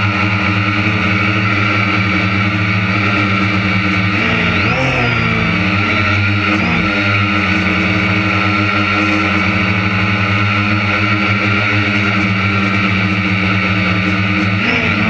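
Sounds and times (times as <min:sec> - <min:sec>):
harvest machinery engine drone: 0:00.0 - 0:15.0
steady whining tones: 0:00.0 - 0:15.0.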